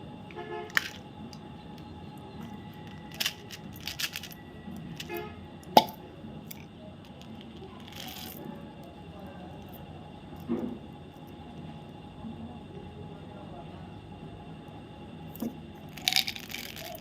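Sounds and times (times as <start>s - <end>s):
wrapper crinkling and tearing: 16.0s - 17.0s.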